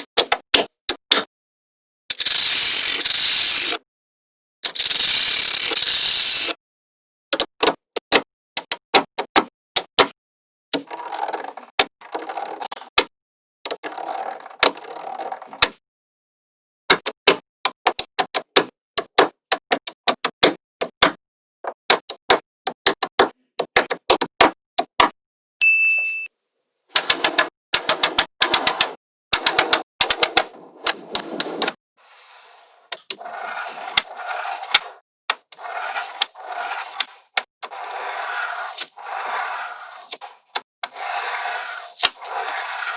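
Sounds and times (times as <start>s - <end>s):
dull scraping: 29.4s - 42.9s.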